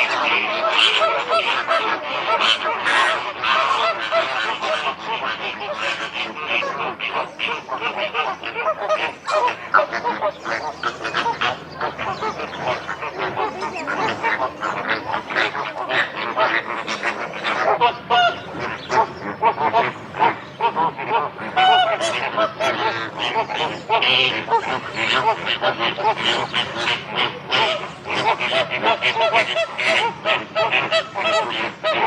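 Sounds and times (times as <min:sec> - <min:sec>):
flamingos honking and chattering: 0:00.0 - 0:32.0.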